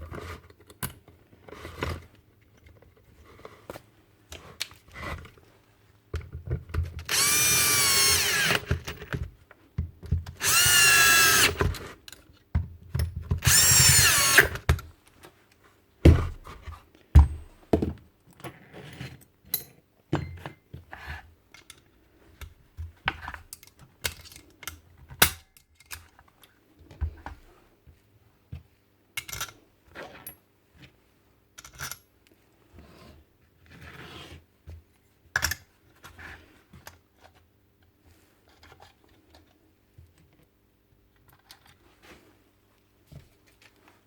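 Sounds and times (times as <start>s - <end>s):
cordless drill motor: 7.0s - 9.0s, 10.4s - 11.8s, 13.4s - 14.7s.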